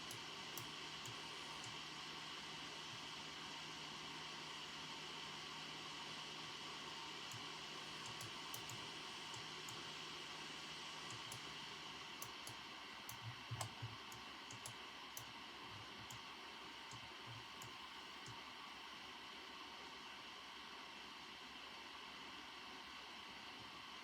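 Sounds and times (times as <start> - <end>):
keyboard typing: 7.3 - 9.9, 11.1 - 11.6, 12.2 - 16.2.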